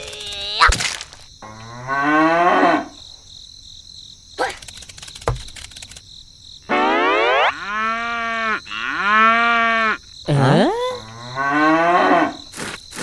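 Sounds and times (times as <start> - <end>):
cow mooing: 1.4 - 3.0, 7.4 - 12.5
sharp click: 4.4 - 6.0.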